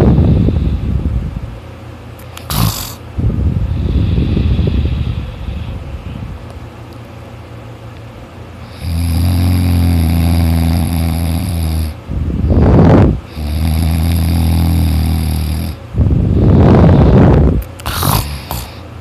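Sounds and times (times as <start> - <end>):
rough noisy breath: 0.0 - 1.1, 2.4 - 3.0, 3.6 - 6.3, 8.6 - 12.0, 13.2 - 19.0
person snoring loudly: 2.4 - 3.0, 8.6 - 12.0, 12.8 - 15.8, 16.4 - 18.8.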